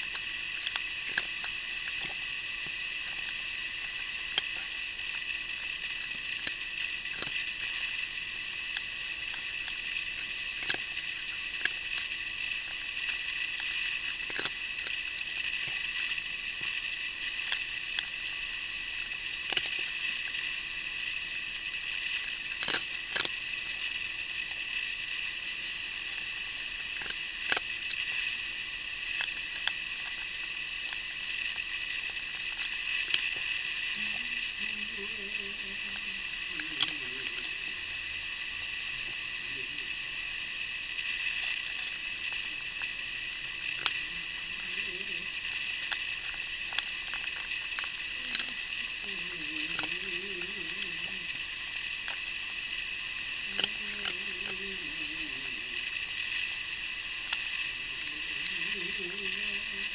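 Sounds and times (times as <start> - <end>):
steady hiss: 0.0 - 59.9.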